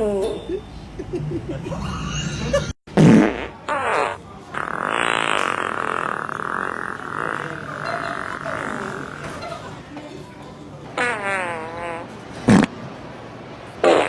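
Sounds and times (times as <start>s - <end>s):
fart noises: 2.6s - 9.8s, 11.0s - 12.8s.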